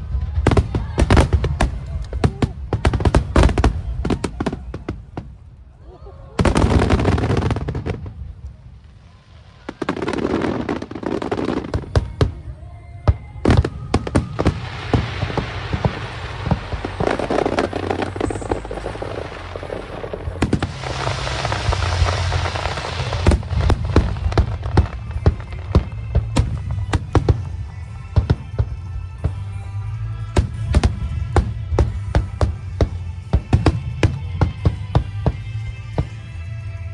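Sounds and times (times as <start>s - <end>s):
firework bangs and crackling: 0.0s - 5.8s, 6.4s - 36.9s
continuous rumble: 0.0s - 9.7s, 11.0s - 36.9s
firework burst: 9.7s - 28.6s.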